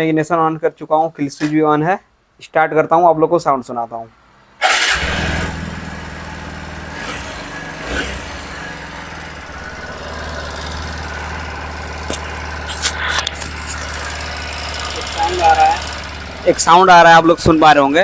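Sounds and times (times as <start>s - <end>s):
motorcycle engine starting and idling: 4.6s - 12.8s, 13.4s - 18.0s.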